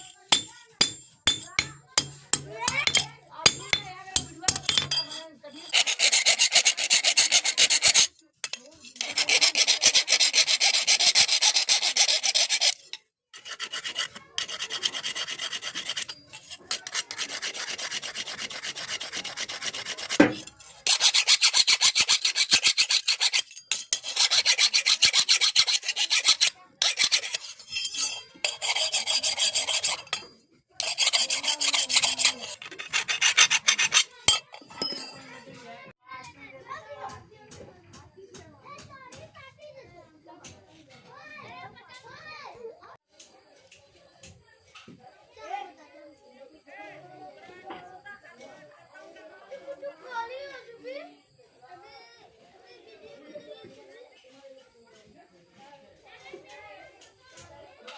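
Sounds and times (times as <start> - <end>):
file rasping on metal: 0.0 - 35.2.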